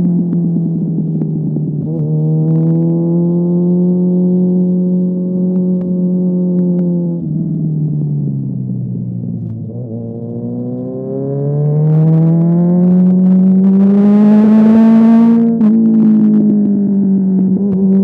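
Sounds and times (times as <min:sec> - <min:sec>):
sport motorcycle engine revving: 0:09.7 - 0:16.5.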